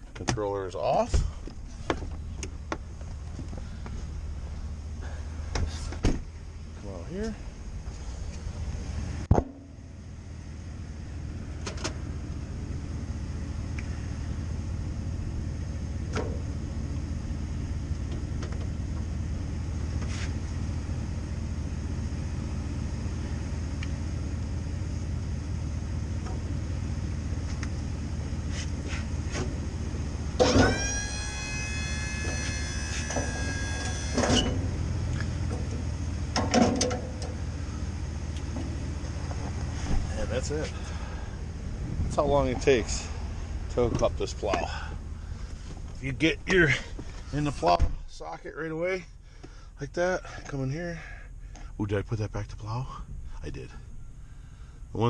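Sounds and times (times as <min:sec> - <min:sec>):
pickup truck engine idling: 0:00.0 - 0:55.0
hydraulic pump whining: 0:28.7 - 0:48.3.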